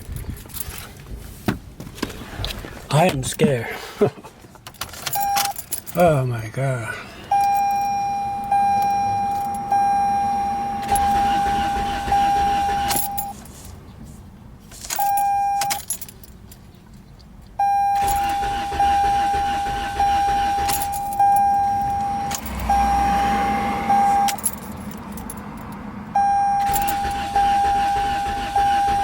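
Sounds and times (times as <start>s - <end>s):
car warning chime tones: 5.2s - 6.7s, 7.3s - 13.4s, 15.0s - 15.9s, 17.6s - 24.6s, 26.1s - 29.0s.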